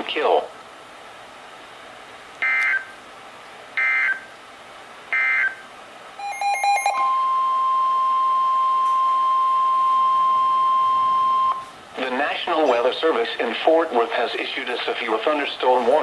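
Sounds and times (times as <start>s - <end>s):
warbling digital data tones: 6.2s - 8.4s
jumble of tones and clicks: 6.2s - 11.6s
steady alert tone: 6.2s - 11.6s.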